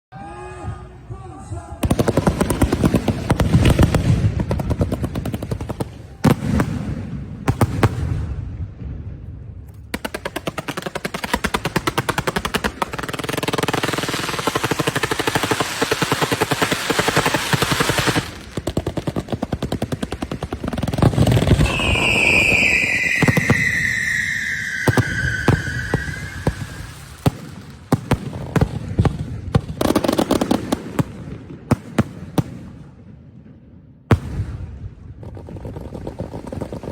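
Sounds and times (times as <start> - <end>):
firecrackers crackling: 9.7 - 32.6
high falling whistle: 21.6 - 27.2.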